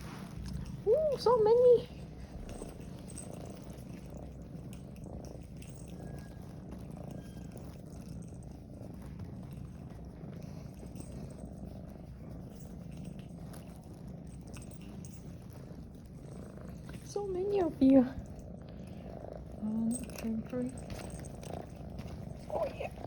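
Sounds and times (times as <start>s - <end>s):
cat purring: 0.0s - 23.0s.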